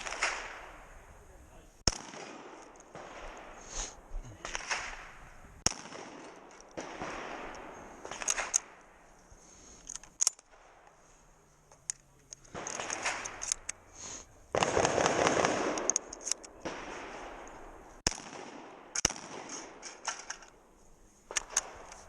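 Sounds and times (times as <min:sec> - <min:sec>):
shotgun shots: 0:00.0 - 0:00.8, 0:01.8 - 0:03.8, 0:04.4 - 0:08.8, 0:14.5 - 0:17.4, 0:18.0 - 0:20.3.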